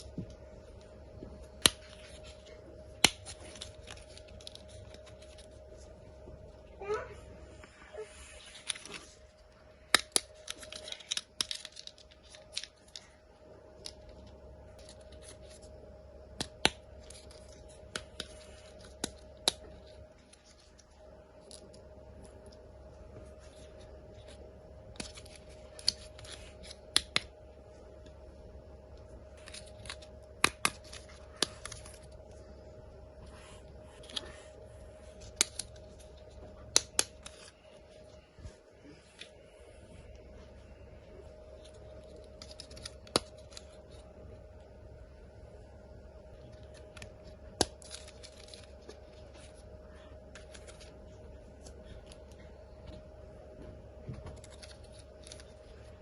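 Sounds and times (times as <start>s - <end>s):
faint steady hum: 0.0s - 56.0s
packaging crinkling and tearing: 1.3s - 6.3s, 8.3s - 27.4s, 29.2s - 32.7s, 33.7s - 38.2s, 41.3s - 44.4s, 46.4s - 52.8s, 54.2s - 56.0s.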